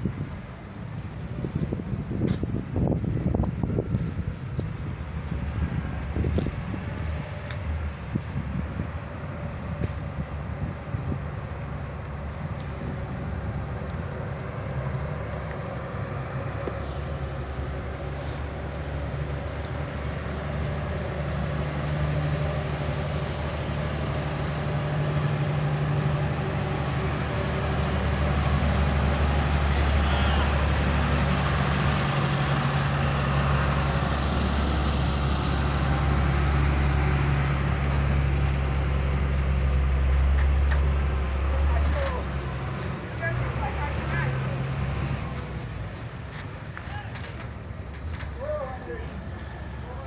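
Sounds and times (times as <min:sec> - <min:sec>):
engine humming: 0:00.0 - 0:50.0.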